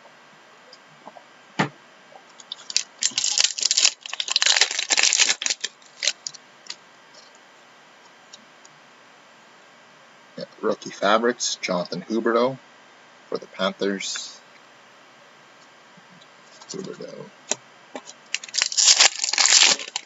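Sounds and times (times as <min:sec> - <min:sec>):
card packaging clicking: 0:02.4 - 0:06.4, 0:18.0 - 0:20.0
packaging crinkling and rustling: 0:02.5 - 0:06.4, 0:18.0 - 0:20.0.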